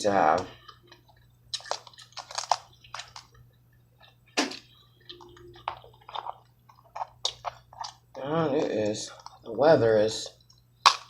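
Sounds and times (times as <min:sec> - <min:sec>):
wet chewing and lip-smacking: 0:00.6 - 0:08.1.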